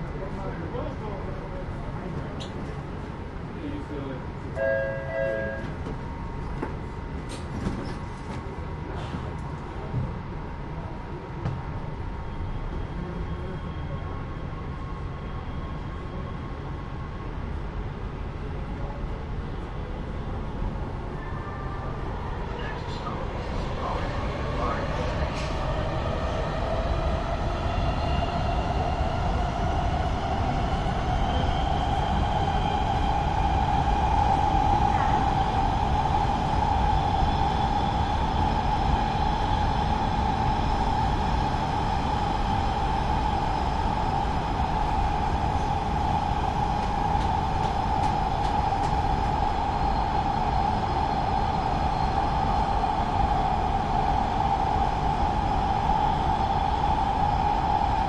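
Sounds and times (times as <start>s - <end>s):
train wheels rumbling on track: 0.0s - 21.2s, 21.8s - 58.0s.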